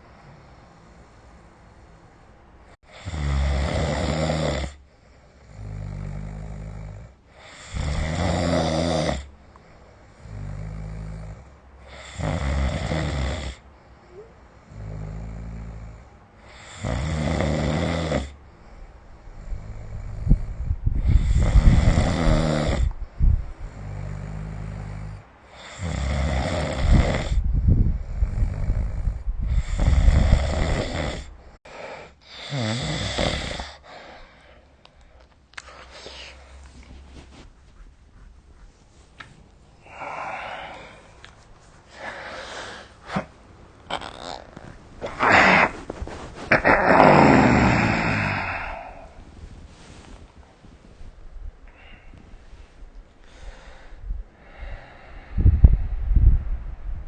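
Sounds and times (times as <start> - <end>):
person snoring: 2.9 - 4.8, 5.4 - 9.3, 10.2 - 18.4, 19.4 - 23.0, 23.6 - 27.5, 28.1 - 34.5, 39.8 - 41.2, 43.9 - 49.4.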